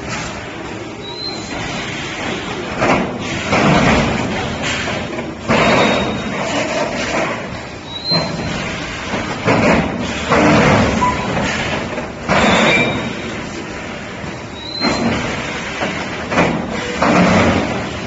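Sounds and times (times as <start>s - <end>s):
high squeaks: 1.0s - 1.7s
welding machinery clattering thuds: 2.6s - 18.0s.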